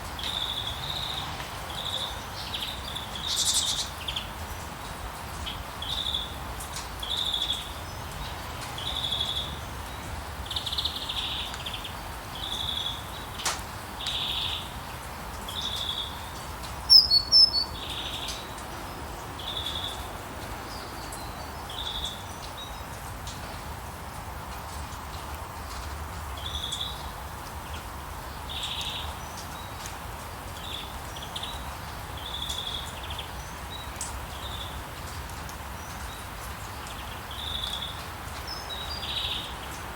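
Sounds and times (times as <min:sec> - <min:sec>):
steady rain hiss: 0:00.0 - 0:39.9
bird giving short high calls: 0:16.9 - 0:17.7
high bird chirps: 0:16.9 - 0:18.2.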